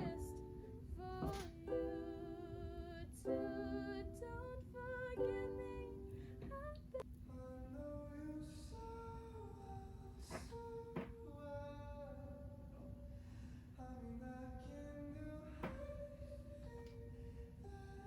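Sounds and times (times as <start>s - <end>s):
person singing with vibrato: 0.0s - 13.2s.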